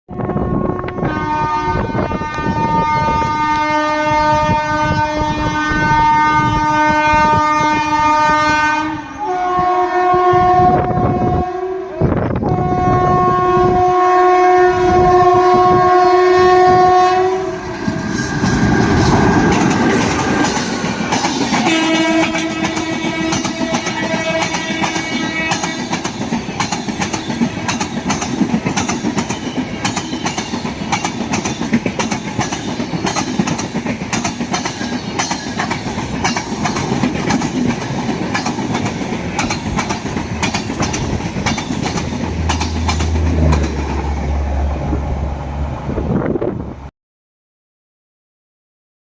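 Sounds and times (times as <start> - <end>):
locomotive horn blasts: 0.1 - 20.6, 21.5 - 26.0
passing train clatter: 0.1 - 46.9.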